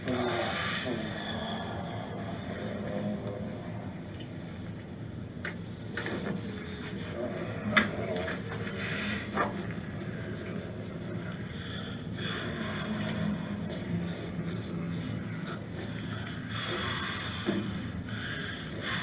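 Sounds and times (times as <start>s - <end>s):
breathy noise: 0.0s - 4.0s.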